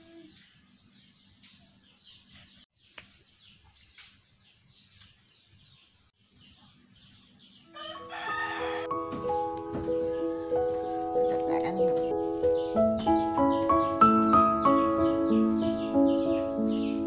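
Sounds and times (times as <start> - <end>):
small birds chirping: 0.0 - 8.1, 9.9 - 17.0
music: 8.0 - 17.0.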